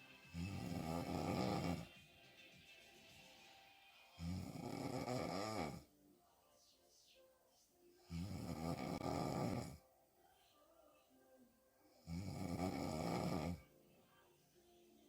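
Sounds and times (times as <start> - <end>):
woman snoring: 0.3 - 1.9, 4.2 - 5.9, 8.1 - 9.8, 12.0 - 13.6
quiet breathing: 2.9 - 15.0.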